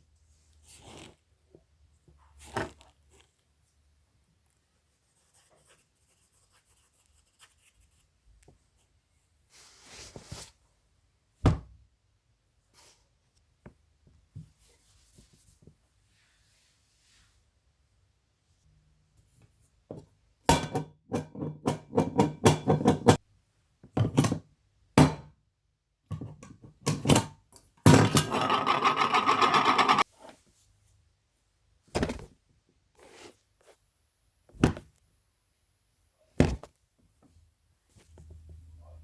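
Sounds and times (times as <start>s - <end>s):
knocks and thuds: 11.4s - 11.8s, 34.6s - 34.9s.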